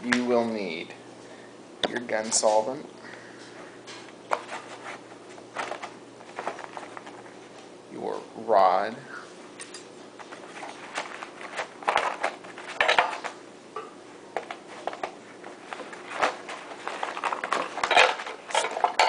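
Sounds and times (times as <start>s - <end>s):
metal rods clinking and rattling: 17.2s - 19.0s.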